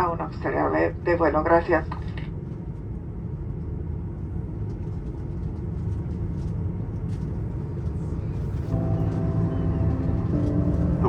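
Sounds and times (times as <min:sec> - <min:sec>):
airliner cabin rumble: 0:00.0 - 0:11.0
soft music: 0:08.2 - 0:11.0.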